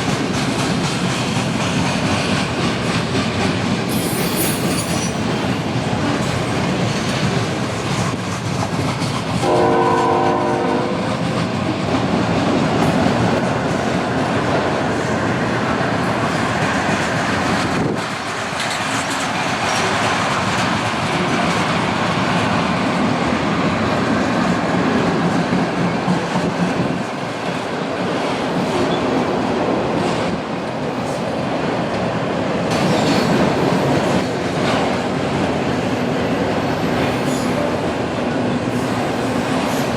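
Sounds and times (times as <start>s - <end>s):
train wheels clattering: 0.0s - 30.4s
locomotive horn blast: 9.4s - 11.0s.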